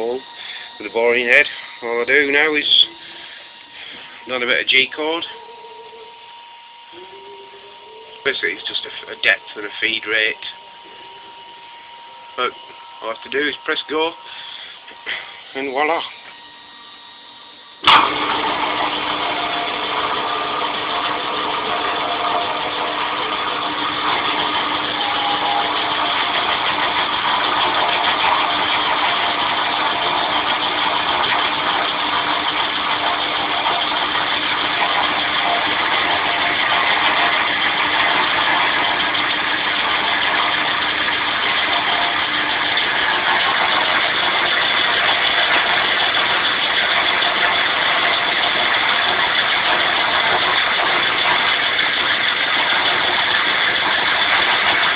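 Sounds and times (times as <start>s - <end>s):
low steady hum: 0.0s - 18.1s
milling machine spindle cutting: 0.0s - 54.9s.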